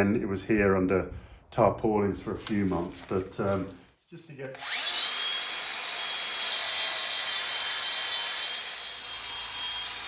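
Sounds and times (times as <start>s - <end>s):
angle grinder sanding metal: 4.6s - 10.0s.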